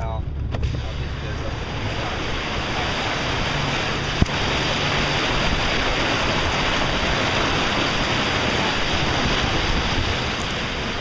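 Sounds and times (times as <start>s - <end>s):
floodwater rushing and splashing: 0.0s - 11.0s.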